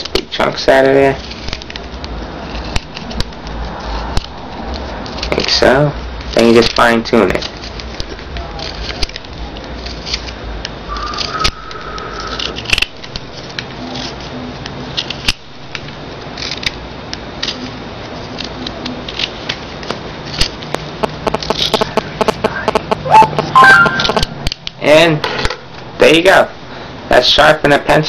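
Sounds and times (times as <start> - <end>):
razor blade scraping pencil: 21.0 - 23.0.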